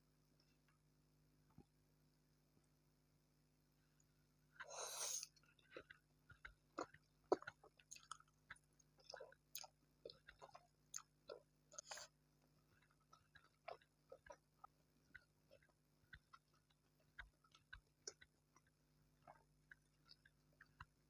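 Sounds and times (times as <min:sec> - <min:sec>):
wet chewing and crunching: 0:04.6 - 0:21.0
noodles slurped: 0:09.0 - 0:14.7.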